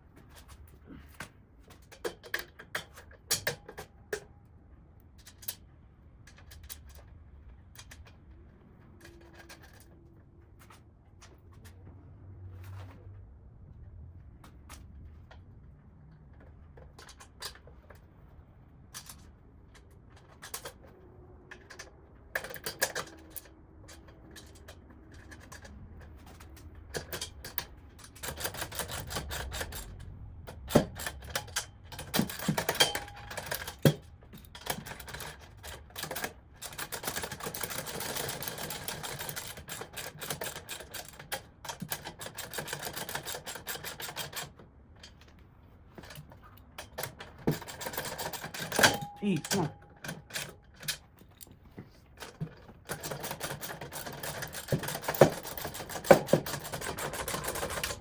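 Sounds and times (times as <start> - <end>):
metal parts clinking and rattling: 9.0 - 10.0, 21.5 - 45.4, 46.0 - 51.6, 52.2 - 58.0.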